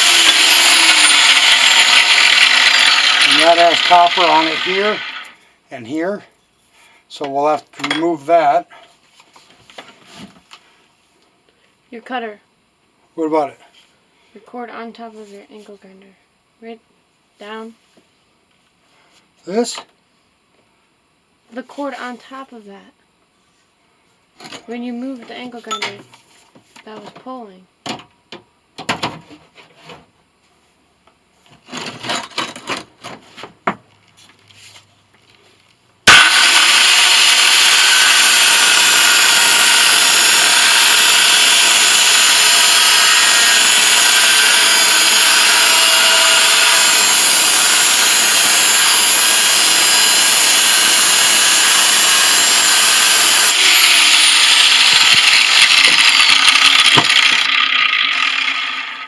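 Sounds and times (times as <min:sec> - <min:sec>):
angle grinder running: 0:00.0 - 0:05.4, 0:36.1 - 0:59.0.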